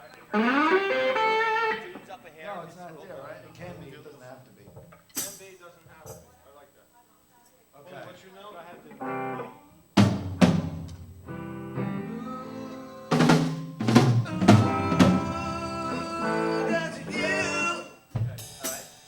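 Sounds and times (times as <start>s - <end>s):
ringing instrument notes: 0.0s - 2.1s
drum kit hits: 10.0s - 12.3s, 13.1s - 16.2s, 18.1s - 19.0s.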